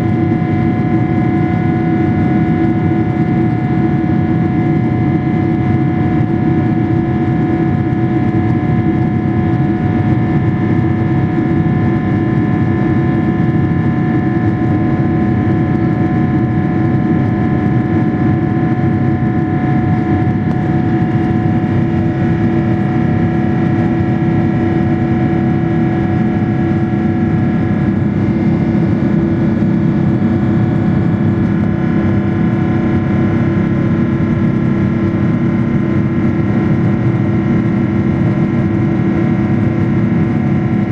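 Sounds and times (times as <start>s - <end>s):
airliner cabin engine drone: 0.0s - 40.9s.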